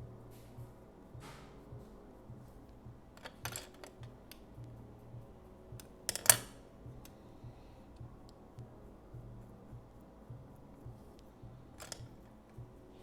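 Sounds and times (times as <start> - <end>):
faint low hum: 0.0 - 13.0
small objects clicking and tapping: 2.7 - 4.8, 5.8 - 7.2, 11.0 - 12.7.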